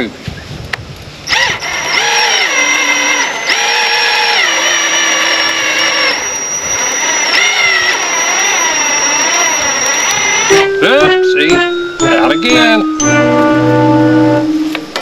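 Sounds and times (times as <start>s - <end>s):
electric drill whining: 1.2s - 10.8s.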